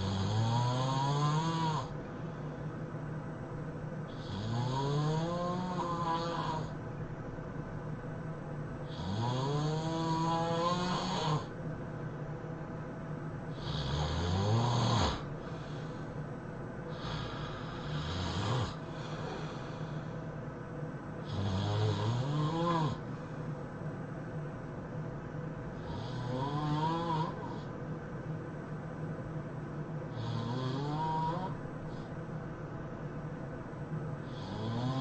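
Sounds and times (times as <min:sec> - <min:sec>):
person snoring: 0:00.0 - 0:02.0, 0:04.1 - 0:06.8, 0:08.9 - 0:11.5, 0:13.5 - 0:16.1, 0:16.9 - 0:20.2, 0:21.2 - 0:23.1, 0:25.8 - 0:27.7, 0:30.1 - 0:32.1, 0:34.2 - 0:35.0.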